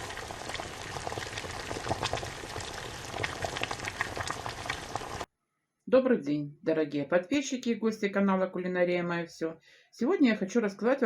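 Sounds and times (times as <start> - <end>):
liquid bubbling and crackling: 0.0 - 5.3.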